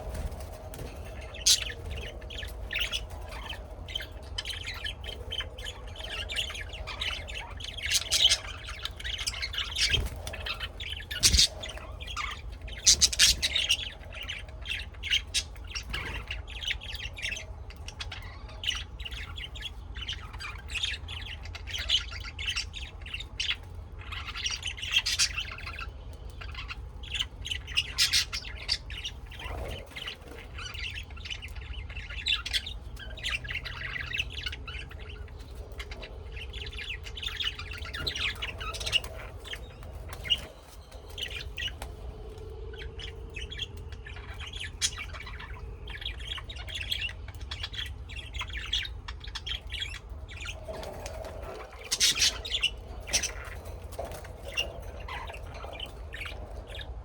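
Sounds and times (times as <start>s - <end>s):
birds chirping and squawking: 0.0s - 57.0s
steady low rumble: 0.0s - 57.0s.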